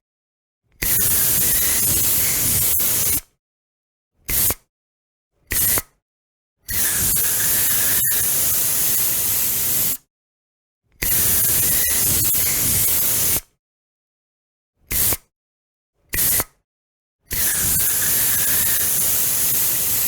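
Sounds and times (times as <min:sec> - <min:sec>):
aerosol spray can hissing: 0:06.8 - 0:10.0, 0:14.9 - 0:15.2, 0:17.3 - 0:20.0.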